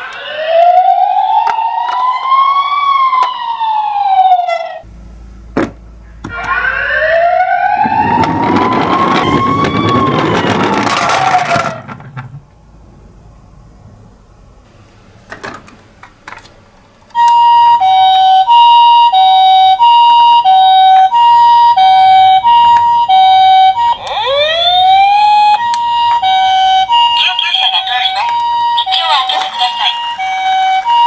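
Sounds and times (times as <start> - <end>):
toy two-tone siren: 0.0 - 4.8, 6.3 - 11.2, 17.2 - 31.0
rising electronic whine: 6.2 - 11.9.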